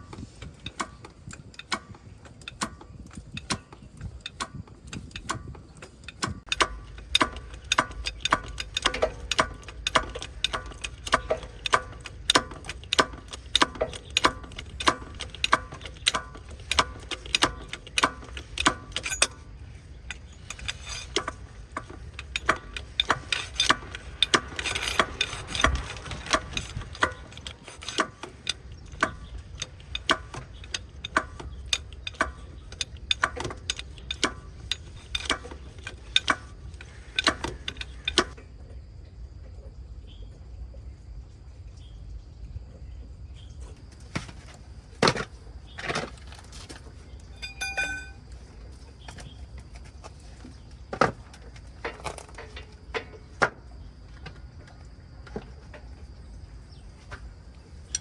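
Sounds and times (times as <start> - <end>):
hand tool metallic clicks: 47.3 - 48.2.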